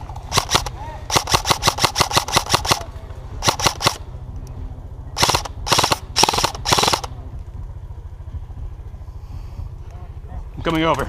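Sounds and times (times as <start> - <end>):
airsoft rifle shots: 0.3 - 4.0, 5.2 - 7.2.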